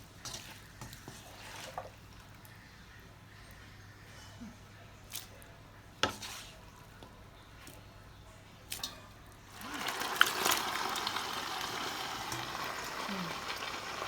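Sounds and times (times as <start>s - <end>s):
hissing in pot: 9.6s - 14.0s.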